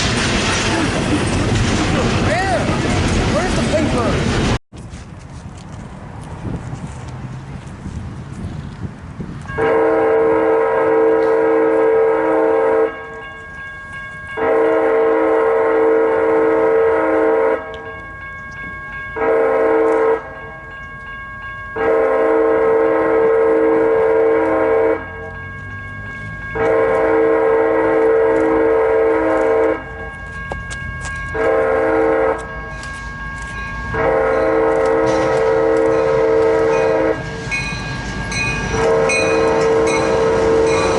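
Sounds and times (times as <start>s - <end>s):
passing train rumble: 0.0s - 40.9s
locomotive air horn blasts: 9.5s - 13.2s, 14.4s - 17.8s, 19.2s - 20.4s, 21.8s - 25.3s, 26.6s - 30.1s, 31.3s - 32.9s, 33.9s - 37.4s, 38.7s - 40.9s.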